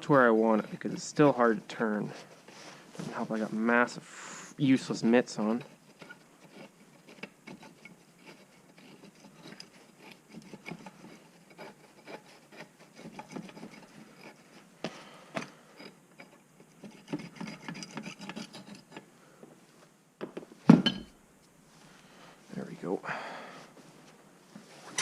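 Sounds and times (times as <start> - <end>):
gritty metal scraping: 0.0 - 4.0, 15.8 - 19.1.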